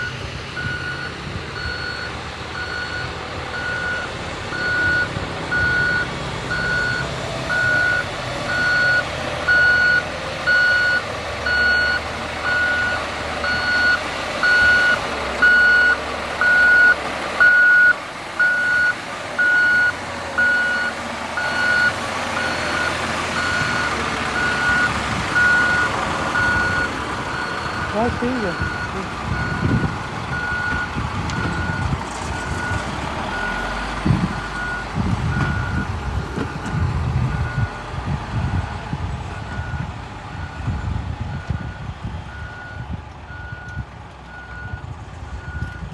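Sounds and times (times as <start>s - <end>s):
reversing alarm beeping: 0.0s - 35.9s
engine rumbling: 0.0s - 45.9s.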